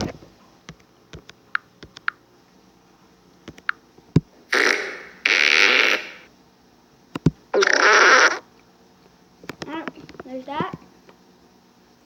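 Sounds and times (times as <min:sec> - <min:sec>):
harsh noise bursts: 0:04.5 - 0:06.3, 0:07.5 - 0:08.5.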